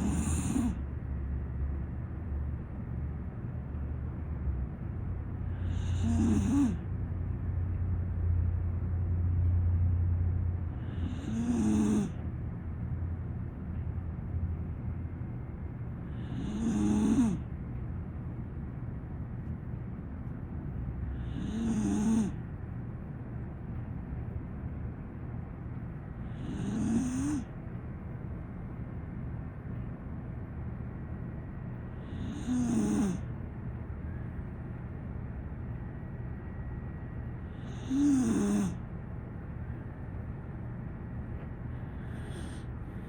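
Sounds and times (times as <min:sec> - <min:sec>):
dog snoring: 0:00.0 - 0:00.8, 0:05.5 - 0:06.9, 0:10.7 - 0:12.2, 0:16.0 - 0:17.5, 0:21.1 - 0:22.4, 0:26.2 - 0:27.6, 0:31.9 - 0:33.3, 0:37.4 - 0:38.8, 0:41.7 - 0:43.0
low background hum: 0:00.0 - 0:43.0.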